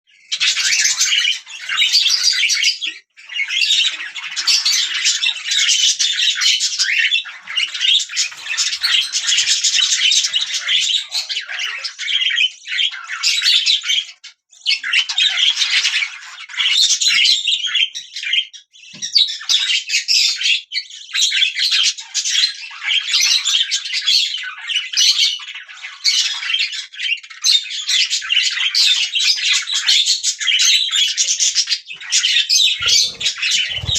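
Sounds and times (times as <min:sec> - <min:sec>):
budgerigars chirping and chattering: 0:00.1 - 0:33.9.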